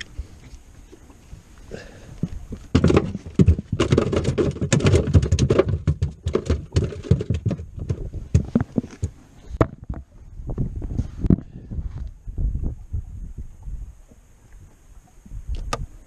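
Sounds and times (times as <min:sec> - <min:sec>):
knocks and thumps in boat: 0:02.2 - 0:11.4.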